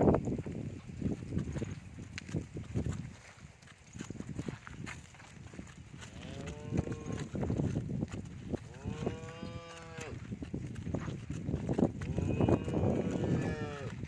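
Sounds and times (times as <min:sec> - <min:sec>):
cow mooing: 0:06.1 - 0:07.3, 0:08.7 - 0:10.2, 0:12.1 - 0:14.0.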